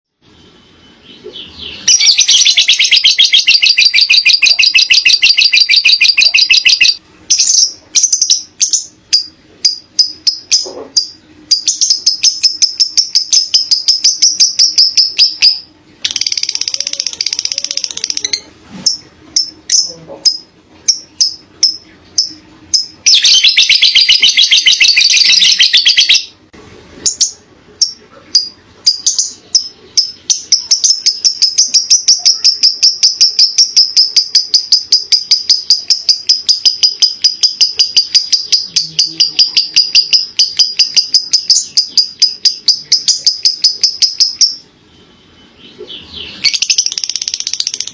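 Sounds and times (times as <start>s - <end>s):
lovebird sharp chirps: 0.8s - 26.4s, 27.0s - 44.7s, 45.4s - 47.9s
lovebird chatter-trills: 46.4s - 47.9s.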